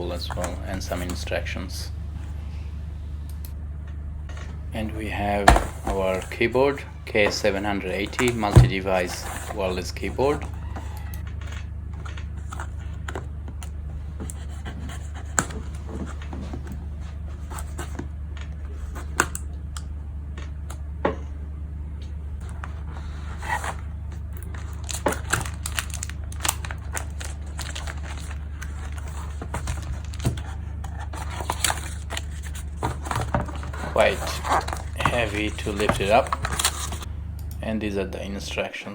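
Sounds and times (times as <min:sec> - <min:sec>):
steady low hum: 0:00.0 - 0:38.9
cardboard packaging rustling: 0:05.2 - 0:10.8, 0:22.4 - 0:37.1.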